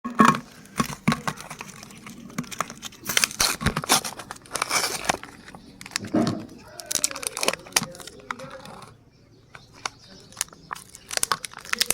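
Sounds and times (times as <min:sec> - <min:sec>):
wafer cones crunching in grinder: 0:00.1 - 0:11.9.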